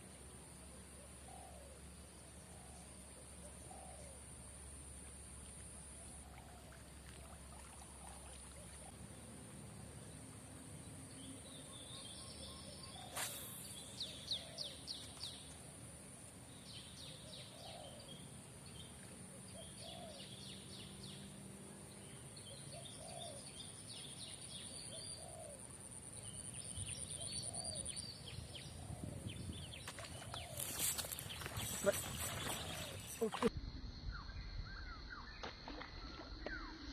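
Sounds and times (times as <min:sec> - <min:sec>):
small birds chirping: 0:26.2 - 0:33.5.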